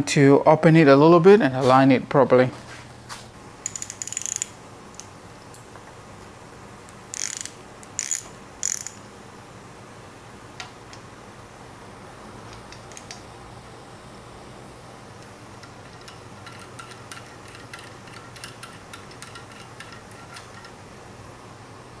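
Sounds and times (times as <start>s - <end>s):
ratchet wrench clicking: 3.6s - 5.1s, 7.1s - 9.0s, 15.6s - 20.8s.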